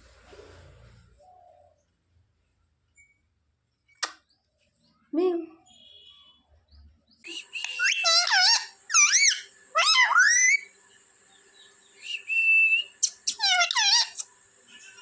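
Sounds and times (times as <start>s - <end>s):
parrot whistling and chirping: 7.3s - 10.7s, 12.0s - 14.3s.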